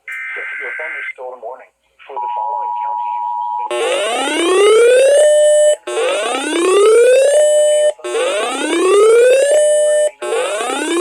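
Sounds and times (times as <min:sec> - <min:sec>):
emergency alert siren tone: 0:03.7 - 0:11.0.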